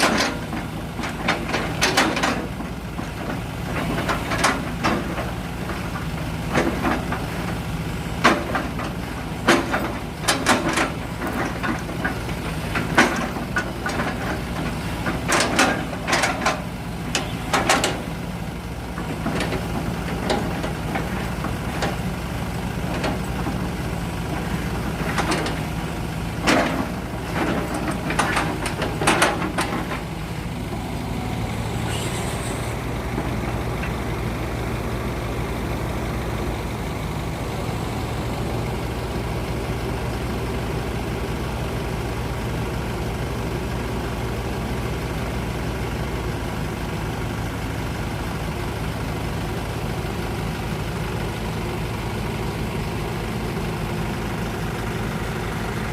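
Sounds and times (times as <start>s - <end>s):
heavy diesel engine running: 0.0s - 55.9s
short hiss: 31.8s - 32.8s.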